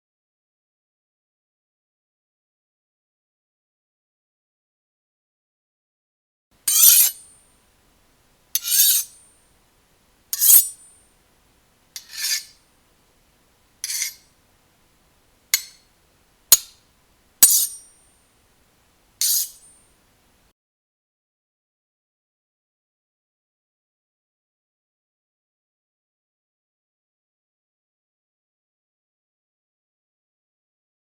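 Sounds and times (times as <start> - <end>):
knife sharpening scrapes: 6.7 - 7.3, 8.6 - 9.2, 10.3 - 10.9, 12.0 - 12.6, 13.8 - 14.3, 15.6 - 15.8, 16.5 - 16.8, 17.4 - 18.0, 19.2 - 19.8.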